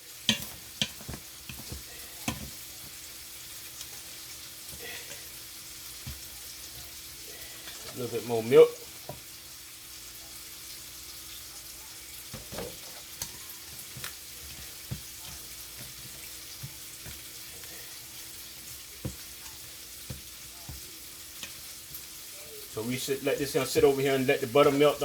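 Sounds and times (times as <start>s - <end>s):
steak sizzling in a pan: 0.0s - 25.0s
spoon knocking against pot: 0.3s - 3.0s.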